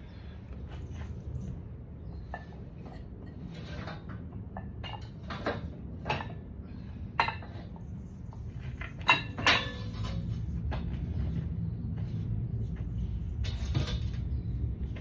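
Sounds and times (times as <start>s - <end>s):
steady low rumble: 0.0s - 15.0s
dishes clinking and clattering: 9.0s - 10.3s.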